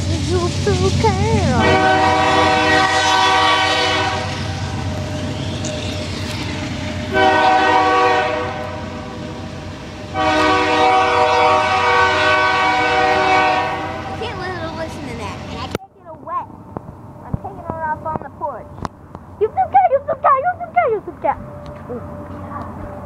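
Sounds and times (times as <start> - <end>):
train horn blasts: 1.6 - 4.6, 7.0 - 9.2, 10.1 - 14.2.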